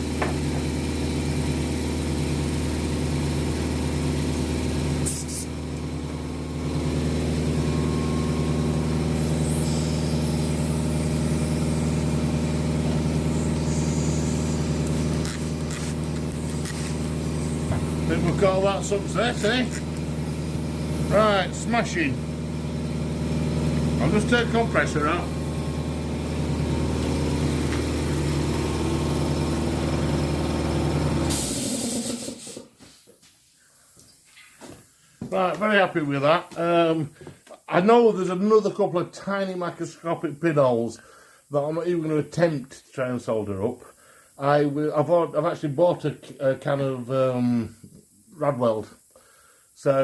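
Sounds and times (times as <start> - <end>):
electric air compressor pulsing: 0.0 - 32.8
air hissing: 4.9 - 5.6, 7.8 - 22.0, 31.2 - 33.1.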